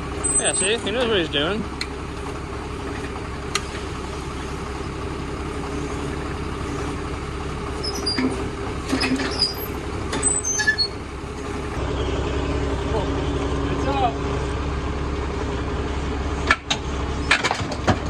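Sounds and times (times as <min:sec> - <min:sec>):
heavy machine engine running: 0:00.0 - 0:18.0
metal clinks and squeaks: 0:09.0 - 0:11.0.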